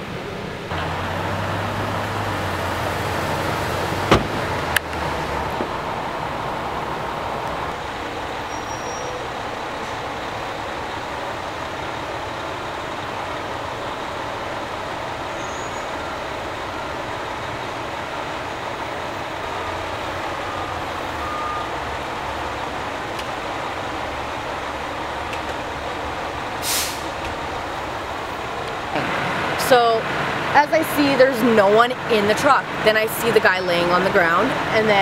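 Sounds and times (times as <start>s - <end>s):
heavy vehicle engine running: 0.0s - 35.0s
air hiss: 26.6s - 27.2s.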